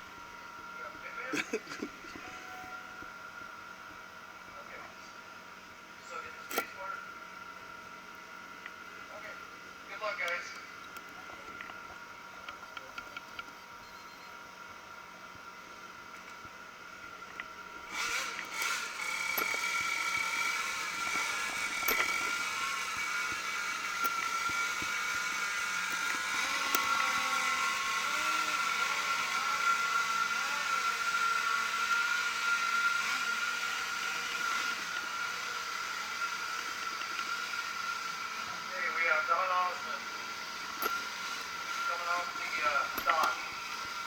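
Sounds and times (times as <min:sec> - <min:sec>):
model boat motors whining: 0:14.8 - 0:44.0.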